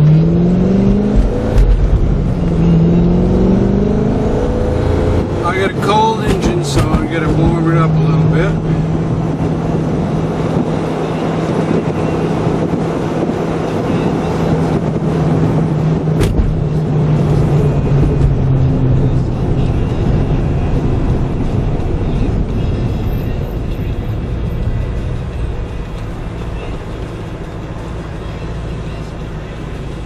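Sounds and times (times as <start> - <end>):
car engine and road noise: 0.0 - 30.0
sharp click: 16.2 - 16.6.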